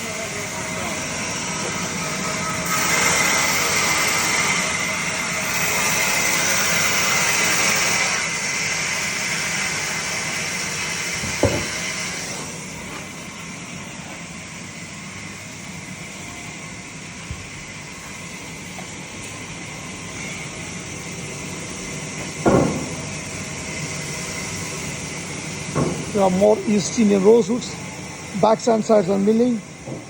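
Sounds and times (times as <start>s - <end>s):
woodworking machinery whirring: 0.0s - 30.0s
sharp knock: 11.3s - 11.8s.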